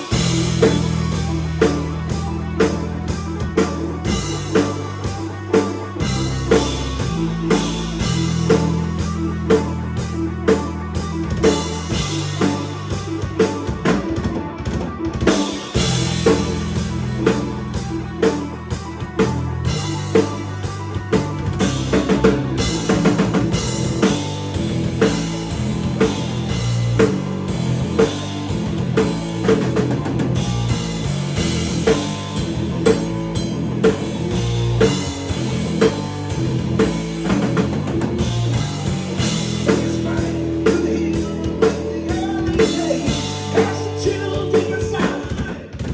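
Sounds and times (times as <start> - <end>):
live rock band playing: 0.0 - 45.9.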